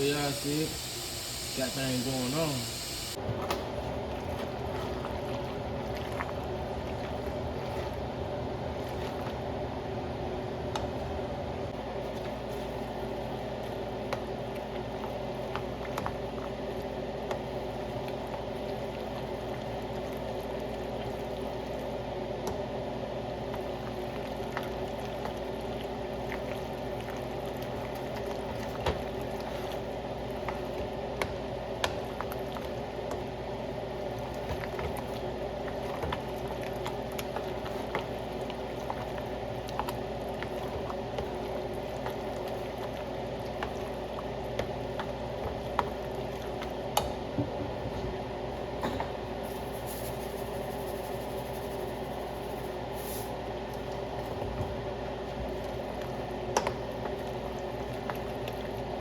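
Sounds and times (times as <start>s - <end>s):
meat sizzling in hot oil: 0.0s - 3.2s.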